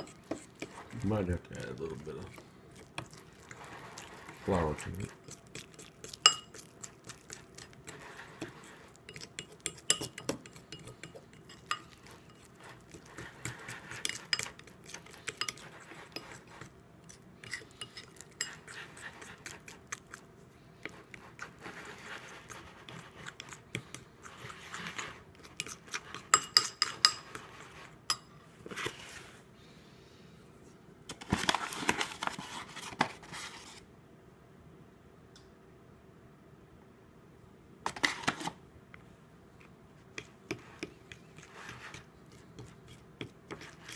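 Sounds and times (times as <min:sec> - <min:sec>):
utensil clinking against bowl: 0:00.0 - 0:16.7, 0:17.4 - 0:19.6, 0:25.4 - 0:27.5
utensil scraping dough in bowl: 0:00.0 - 0:29.4, 0:39.6 - 0:43.9.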